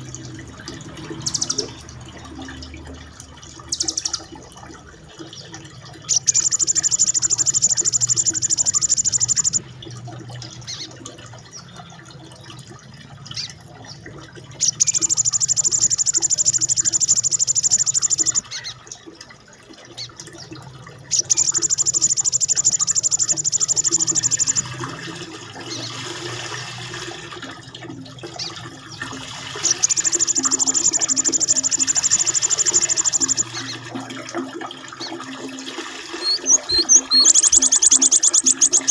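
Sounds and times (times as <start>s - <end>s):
rushing water-like noise: 0.0s - 38.9s
songbird rolling trill: 6.3s - 9.6s, 14.8s - 18.4s, 21.2s - 24.7s, 29.7s - 33.6s, 36.2s - 38.9s.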